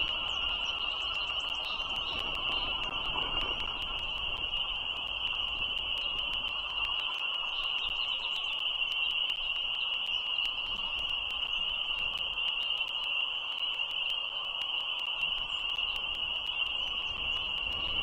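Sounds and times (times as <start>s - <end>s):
faint clicks: 0.0s - 18.0s
frog chorus peeping: 0.0s - 18.0s.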